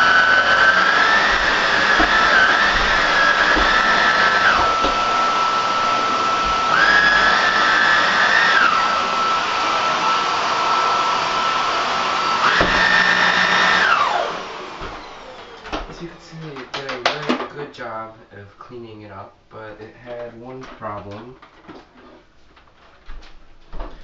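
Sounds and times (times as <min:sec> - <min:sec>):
vacuum cleaner whining: 0:00.0 - 0:17.4.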